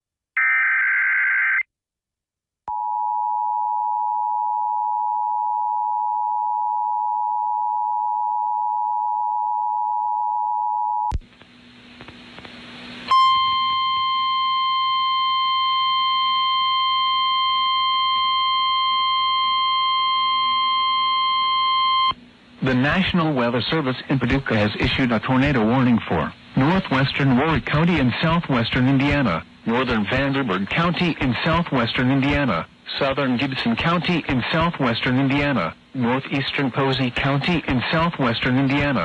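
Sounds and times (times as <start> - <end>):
static hiss: 11.2 - 14.0, 22.1 - 39.0
two-tone attention signal: 13.1 - 16.1
steady warning alarm tone: 13.1 - 22.2.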